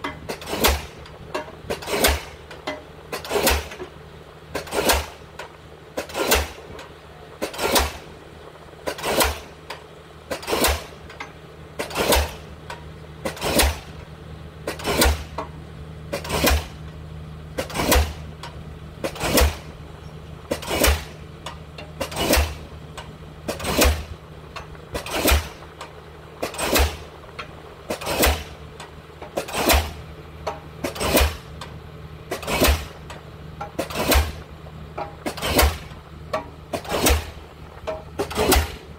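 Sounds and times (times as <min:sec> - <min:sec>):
crane engine humming: 0:00.0 - 0:38.9
pile hammer banging: 0:35.0 - 0:38.9.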